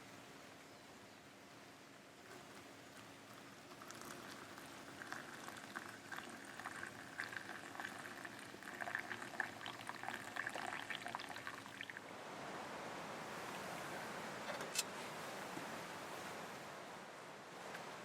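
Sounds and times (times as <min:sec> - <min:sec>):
pot of liquid boiling: 0:02.4 - 0:12.0.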